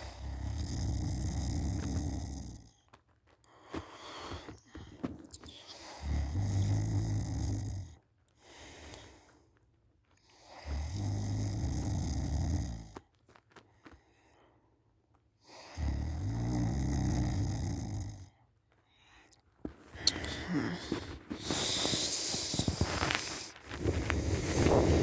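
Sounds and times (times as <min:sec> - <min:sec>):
person snoring loudly: 0:00.0 - 0:02.7, 0:05.4 - 0:08.0, 0:10.5 - 0:13.0, 0:15.5 - 0:18.3, 0:20.0 - 0:25.0
quiet breathing: 0:00.0 - 0:25.0.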